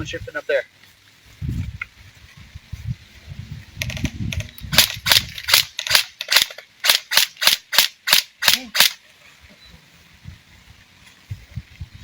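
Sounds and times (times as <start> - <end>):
low rumbling on microphone: 1.4 - 5.3, 9.8 - 12.0
airsoft rifle shots: 4.8 - 9.0.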